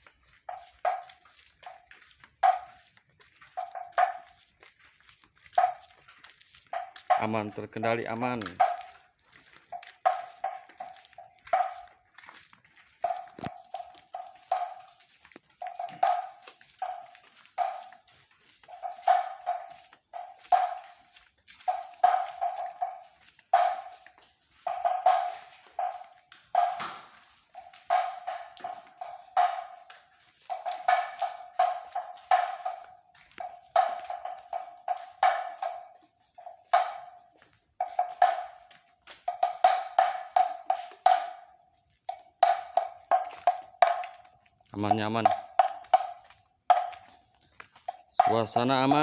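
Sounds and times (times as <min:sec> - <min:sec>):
slit drum knocks: 0:24.7 - 0:29.8.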